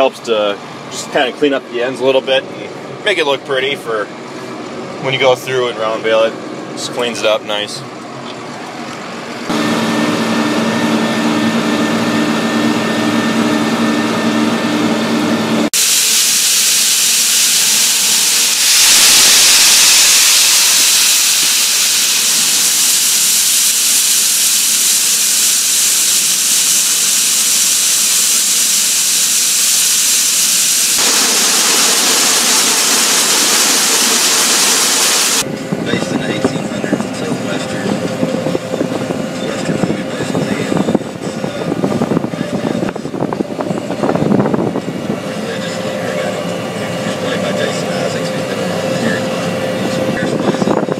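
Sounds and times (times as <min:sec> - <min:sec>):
tractor engine humming: 0:16.4 - 0:50.4.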